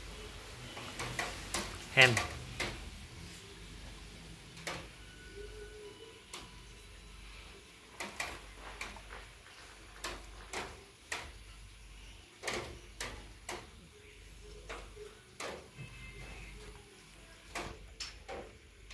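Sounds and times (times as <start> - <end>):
sharp clicks and light knocks: 1.0 - 2.8, 8.0 - 11.4, 12.4 - 13.8, 14.5 - 15.7, 17.5 - 18.9.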